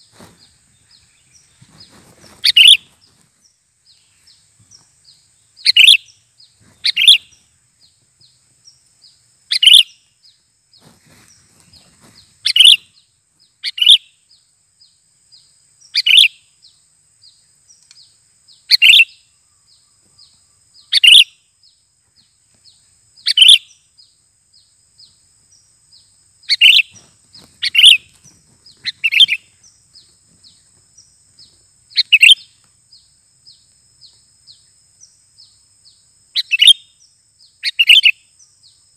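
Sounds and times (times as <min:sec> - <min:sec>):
bird calling: 0:00.0 - 0:07.9, 0:09.5 - 0:10.1, 0:10.8 - 0:13.0, 0:13.6 - 0:14.1, 0:15.8 - 0:16.4, 0:18.6 - 0:21.4, 0:23.2 - 0:23.8, 0:26.4 - 0:33.0, 0:35.4 - 0:38.4.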